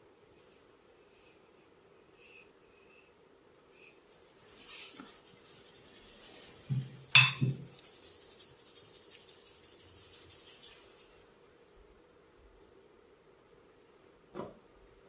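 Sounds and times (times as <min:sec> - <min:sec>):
rubbing and scratching on hair: 0:04.3 - 0:11.2
dull thumps: 0:06.6 - 0:07.8.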